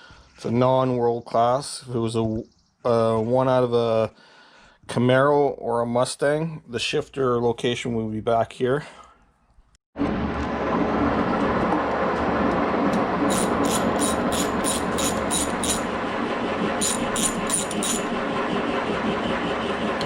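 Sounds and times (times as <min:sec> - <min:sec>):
machine humming: 0:10.0 - 0:20.0
ratchet wrench clicking: 0:13.3 - 0:15.8, 0:16.8 - 0:18.1.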